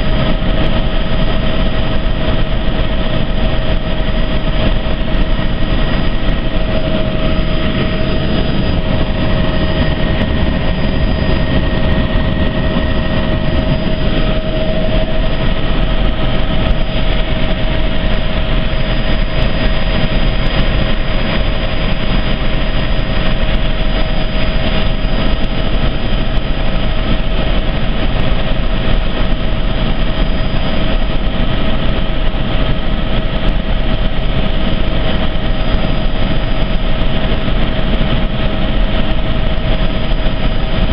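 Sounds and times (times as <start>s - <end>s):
helicopter engine and rotor drone: 0.0s - 40.9s.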